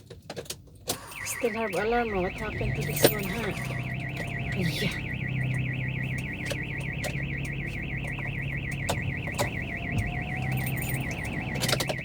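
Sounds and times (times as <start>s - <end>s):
car alarm siren warbling: 0.9s - 12.0s
sharp clicks: 5.0s - 12.0s.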